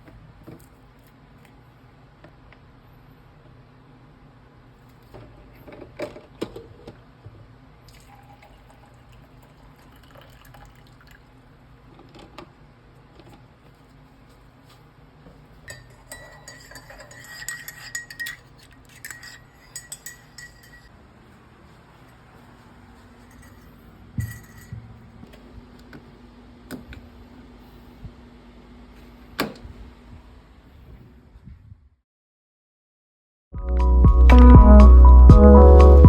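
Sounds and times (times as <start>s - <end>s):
glassware and cutlery clinking: 15.6s - 20.9s, 23.2s - 25.0s.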